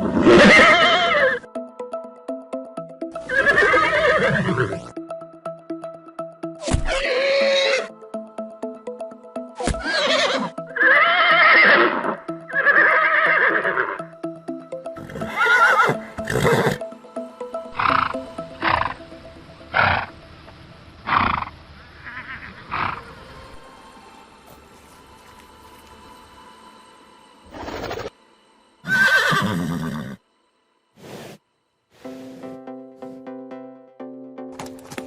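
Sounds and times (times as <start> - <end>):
horses neighing: 0.0 - 1.4, 3.2 - 4.9, 6.6 - 7.9, 9.6 - 14.0, 15.0 - 16.8, 21.1 - 23.2, 28.8 - 30.2.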